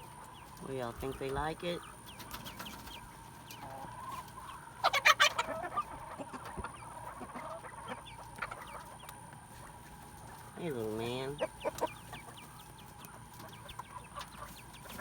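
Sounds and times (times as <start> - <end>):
quail chirping and clucking: 0.0 - 15.0.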